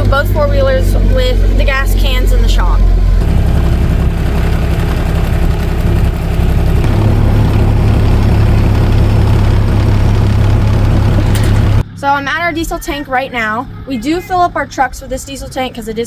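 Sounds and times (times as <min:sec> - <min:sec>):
vehicle engine droning: 0:00.0 - 0:11.8.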